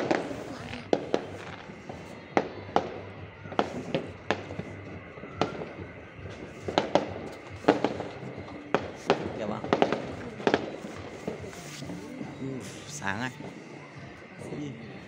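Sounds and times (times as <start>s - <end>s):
distant fireworks bangs: 0.0s - 15.0s.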